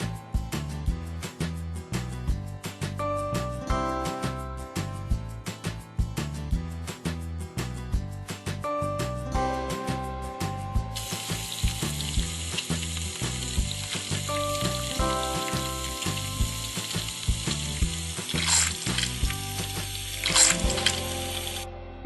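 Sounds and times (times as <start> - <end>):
acoustic guitar music: 10.8 - 21.8
steady hiss: 11.0 - 21.6.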